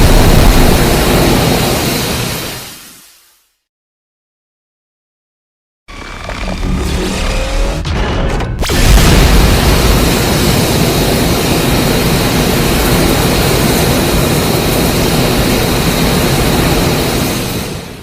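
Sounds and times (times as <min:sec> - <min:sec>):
jet engine like rush: 0:00.0 - 0:03.0, 0:08.7 - 0:18.0.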